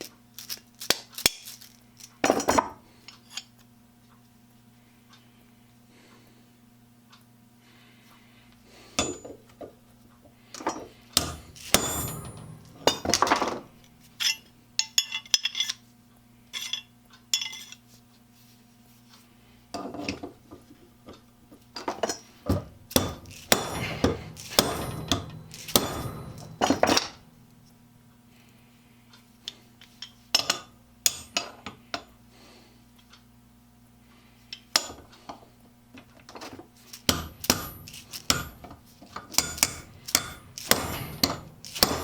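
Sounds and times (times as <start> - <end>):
metal tools clinking and scraping: 0.0 - 3.5, 10.6 - 15.8, 16.5 - 17.8, 21.8 - 27.8, 36.4 - 42.0
low electrical hum: 0.0 - 42.0.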